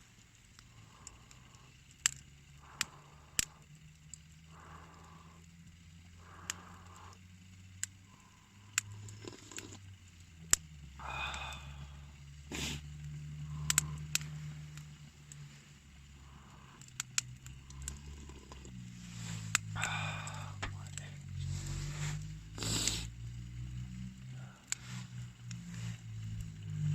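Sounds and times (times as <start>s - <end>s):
campfire crackling: 0.0s - 26.9s
steady low hum: 0.0s - 26.9s
fire pops: 12.5s - 15.5s.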